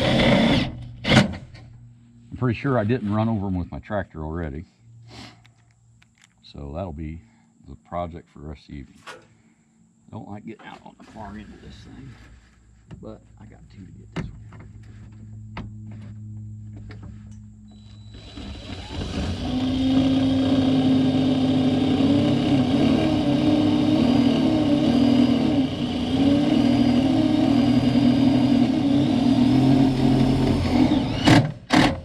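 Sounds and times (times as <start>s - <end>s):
drill driving screw into metal: 17.8s - 32.0s.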